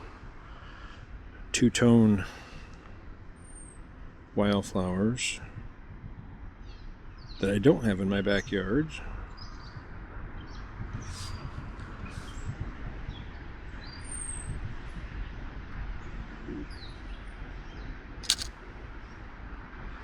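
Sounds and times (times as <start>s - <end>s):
wind rumble on microphone: 5.5s - 7.3s, 9.6s - 16.1s
sharp click: 18.2s - 18.5s.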